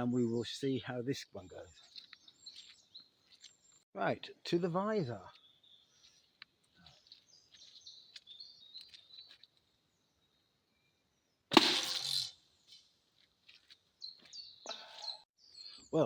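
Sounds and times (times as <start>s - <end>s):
birds chirping: 0.0s - 16.0s
arrow clattering: 11.5s - 12.3s
arrow cracking against helmet: 11.5s - 12.3s.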